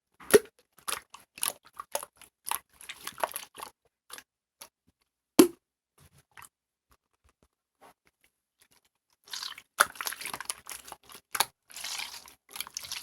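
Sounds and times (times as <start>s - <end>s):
slime squished by hand: 9.3s - 13.0s.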